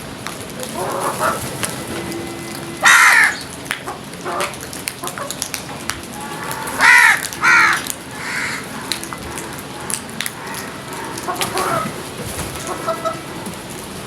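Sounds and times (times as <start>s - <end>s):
crows cawing: 2.7s - 5.2s, 6.2s - 12.0s.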